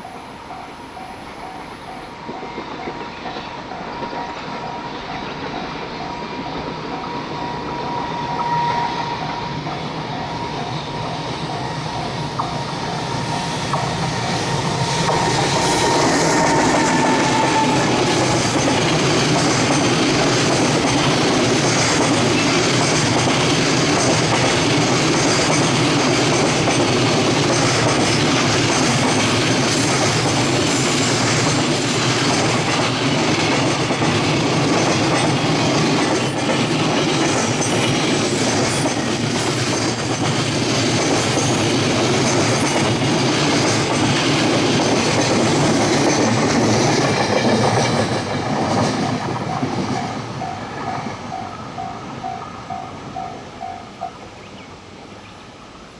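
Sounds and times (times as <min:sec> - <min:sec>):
freight train wagons rumbling: 0:00.0 - 0:54.6.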